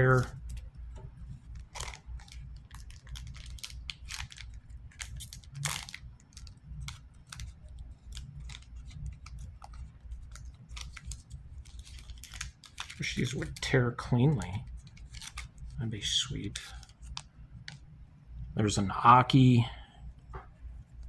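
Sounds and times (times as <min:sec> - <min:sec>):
foil wrapper rustling: 0:01.4 - 0:17.8.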